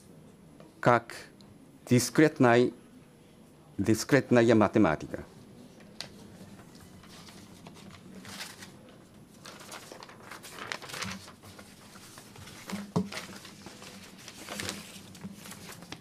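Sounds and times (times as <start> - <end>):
rustling and scraping: 9.4 - 16.0.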